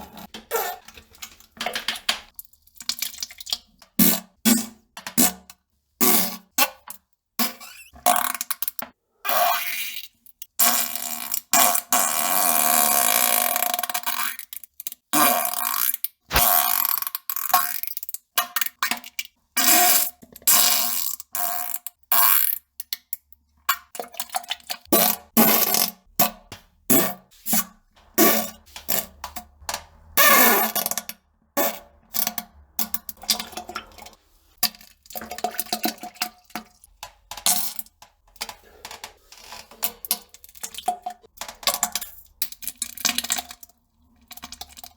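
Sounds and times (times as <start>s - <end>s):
fart sound effects: 16.3s - 16.6s.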